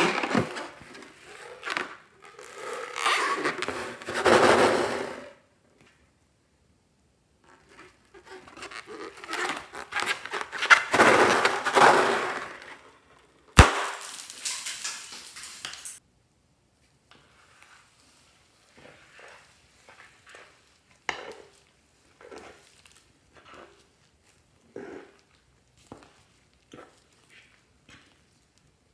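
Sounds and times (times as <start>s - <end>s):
crinkling handling noise: 0.0s - 4.8s, 7.4s - 16.0s.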